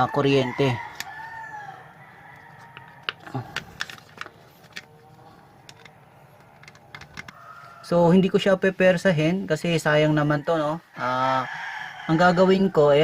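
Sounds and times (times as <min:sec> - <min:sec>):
rooster crowing: 0:00.0 - 0:03.5, 0:07.3 - 0:08.4, 0:09.9 - 0:13.0
small parts clicking and tapping: 0:02.4 - 0:04.9, 0:05.6 - 0:07.4.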